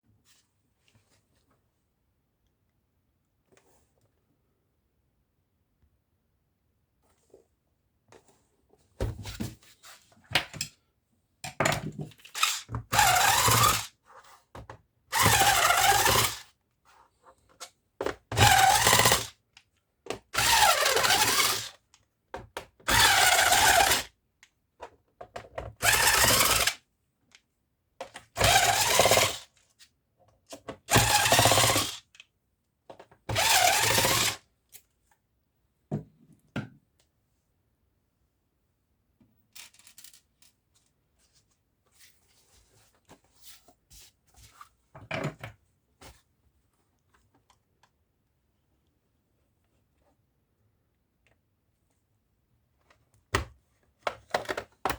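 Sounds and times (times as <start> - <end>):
electric screwdriver motor: 12.4 - 13.9, 15.2 - 16.4, 18.4 - 19.3, 20.4 - 21.8, 22.9 - 24.1, 25.8 - 26.8, 28.4 - 29.4, 30.9 - 32.0, 33.3 - 34.4.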